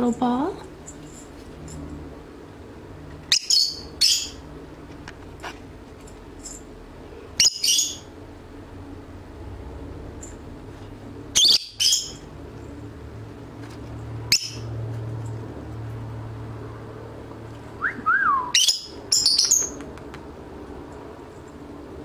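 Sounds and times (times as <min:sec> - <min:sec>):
parrots chirping: 0:03.2 - 0:04.5, 0:07.4 - 0:08.1, 0:11.3 - 0:12.3, 0:14.2 - 0:14.8, 0:18.4 - 0:19.9
parrot whistle falling in pitch: 0:17.8 - 0:18.7.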